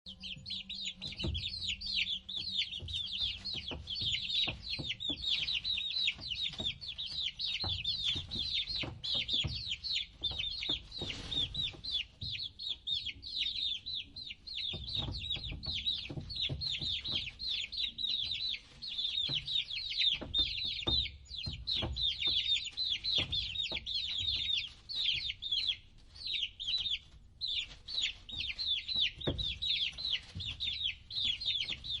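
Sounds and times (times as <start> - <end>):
chicks peeping: 0.1 - 32.0.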